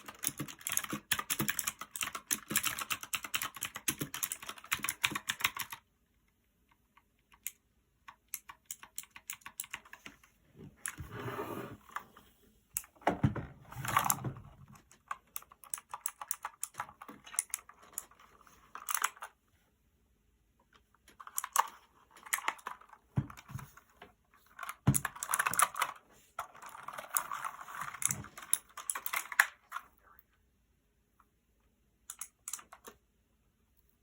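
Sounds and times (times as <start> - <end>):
clicky keyboard typing: 0.0 - 5.9, 6.6 - 10.2, 14.8 - 19.4, 26.6 - 29.8, 32.1 - 33.0.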